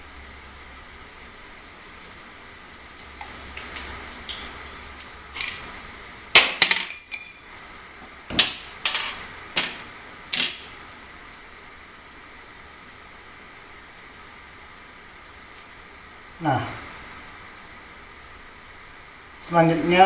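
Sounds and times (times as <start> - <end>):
metal parts knocking and clinking: 5.3 - 5.7, 6.4 - 7.5
high metallic ring: 6.9 - 7.6.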